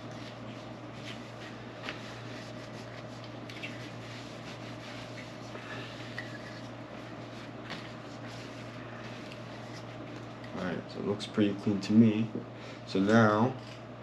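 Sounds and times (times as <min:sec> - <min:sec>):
steady low hum: 0:00.0 - 0:14.0
cloth rubbing: 0:00.1 - 0:10.0.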